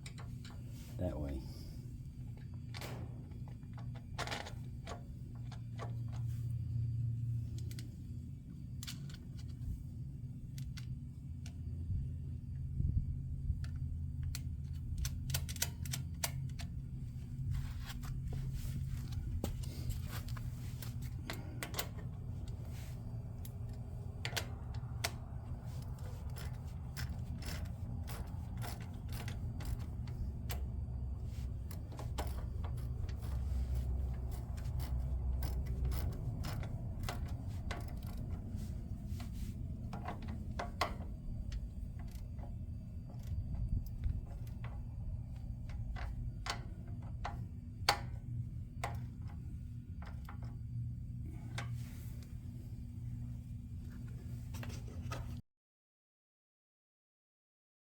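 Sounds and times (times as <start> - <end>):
steady low hum: 0.0 - 55.4
metallic clicks of hand tools: 31.6 - 38.4.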